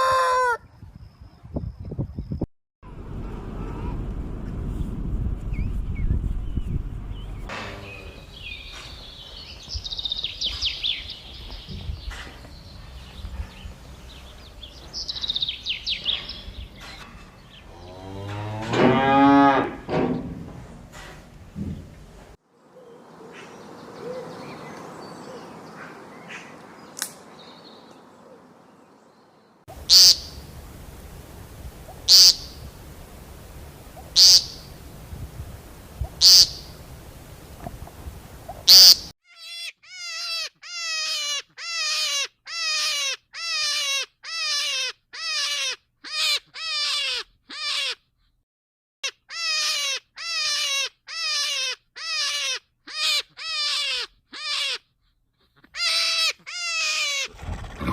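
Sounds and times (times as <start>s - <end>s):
rapid short falling calls: 29.7s - 39.1s
loud high animal calls: 29.8s - 30.4s, 31.9s - 32.7s, 34.0s - 34.7s, 36.2s - 36.8s, 55.7s - 57.9s.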